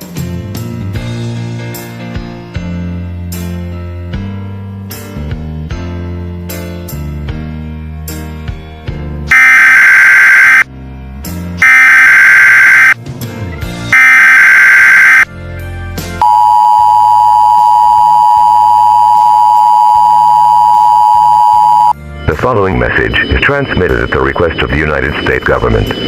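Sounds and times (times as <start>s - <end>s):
music: 0.0s - 9.3s, 10.7s - 11.6s, 13.0s - 14.0s, 15.3s - 16.2s, 22.0s - 26.0s
two-tone attention signal: 9.3s - 10.6s, 11.6s - 13.0s, 14.0s - 15.3s, 16.2s - 22.0s, 23.0s - 26.0s
digital data tone bursts: 9.3s - 10.7s, 11.6s - 13.0s, 14.0s - 15.3s, 16.2s - 22.0s, 22.9s - 26.0s.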